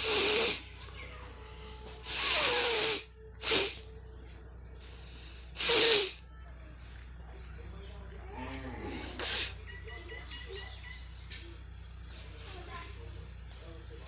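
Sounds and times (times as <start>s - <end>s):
person blowing nose: 0.0s - 0.6s, 2.0s - 3.8s, 5.1s - 6.2s.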